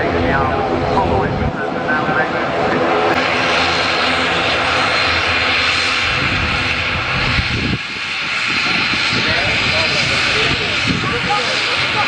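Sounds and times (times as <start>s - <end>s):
jet engines running: 0.0s - 12.0s.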